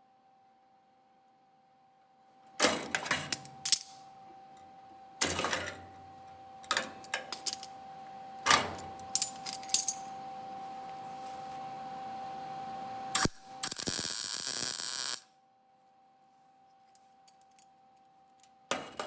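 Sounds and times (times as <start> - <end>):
metal tools clinking and clattering: 9.2 - 10.1.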